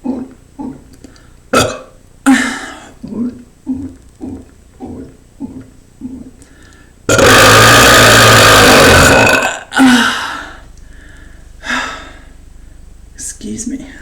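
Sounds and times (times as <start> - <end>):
man belching: 0.0 - 6.4, 7.1 - 10.0.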